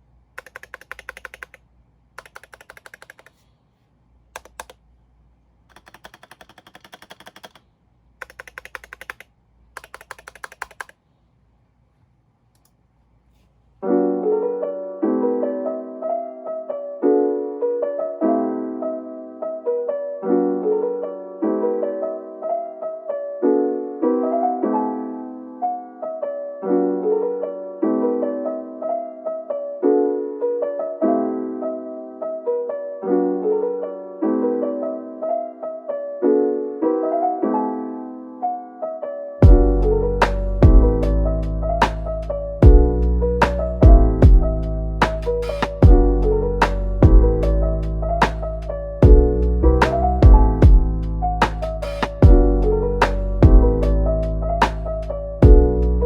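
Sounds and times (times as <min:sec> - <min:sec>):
mechanical keyboard typing: 0:00.4 - 0:01.6, 0:02.2 - 0:03.4, 0:04.3 - 0:04.8, 0:05.7 - 0:11.0
mellow piano music: 0:13.8 - 0:56.0.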